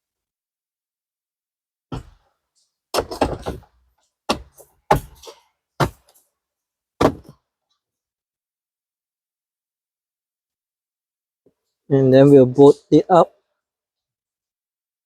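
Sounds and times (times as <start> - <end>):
plastic parts knocking: 3.0 - 6.2.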